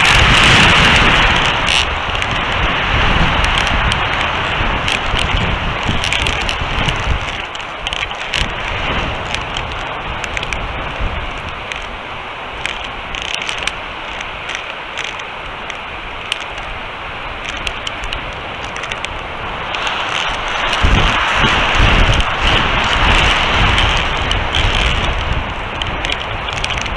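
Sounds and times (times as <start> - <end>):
crackles: 0.0 - 26.9
wind buffeting microphone: 0.0 - 26.9.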